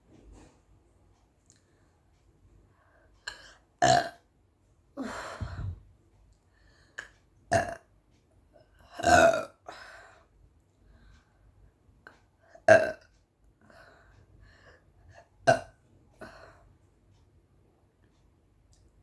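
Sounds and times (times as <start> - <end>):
woman burping: 3.8 - 4.2, 7.5 - 7.8, 9.0 - 9.8, 12.7 - 13.0, 15.5 - 15.7.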